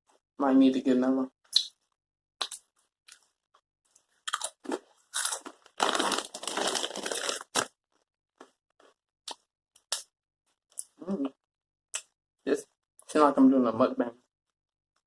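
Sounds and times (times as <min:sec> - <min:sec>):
crunching and chewing chip: 0:04.2 - 0:07.7.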